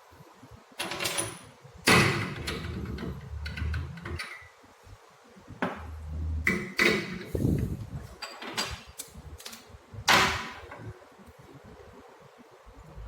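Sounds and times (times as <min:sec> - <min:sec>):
metal tools clattering on workbench: 0:08.2 - 0:09.0.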